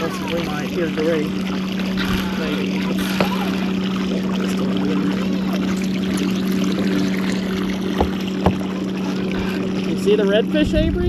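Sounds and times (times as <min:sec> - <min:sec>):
boat motor hum: 0:00.0 - 0:11.0
water noise: 0:00.0 - 0:11.0
sharp knocks: 0:08.0 - 0:08.6.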